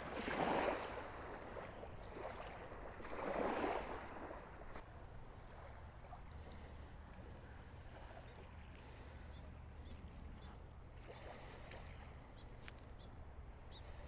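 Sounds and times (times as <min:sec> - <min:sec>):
small waves lapping on shore: 0:00.0 - 0:14.0.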